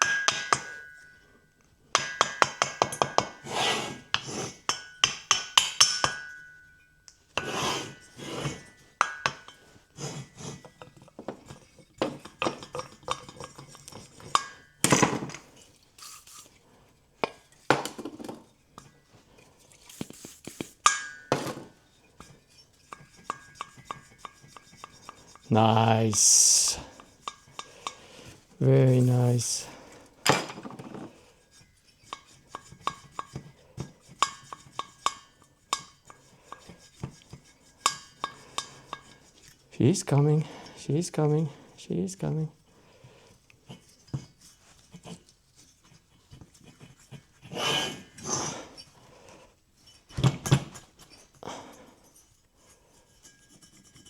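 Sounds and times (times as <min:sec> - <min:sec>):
metal tools clicking and tapping: 0:00.0 - 0:01.2, 0:02.0 - 0:03.4, 0:04.7 - 0:07.5, 0:08.6 - 0:09.8, 0:10.6 - 0:15.5, 0:20.6 - 0:21.6, 0:22.2 - 0:25.5, 0:26.3 - 0:28.4, 0:32.0 - 0:39.6
metal rubbing: 0:22.1 - 0:29.8.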